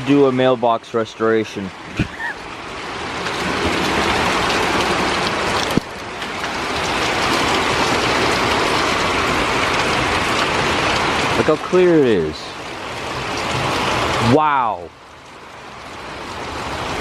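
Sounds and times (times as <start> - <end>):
rain falling: 0.0 - 17.0.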